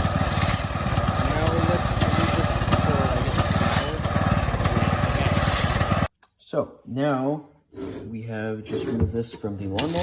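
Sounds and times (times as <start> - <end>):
small engine running steadily: 0.0 - 6.1.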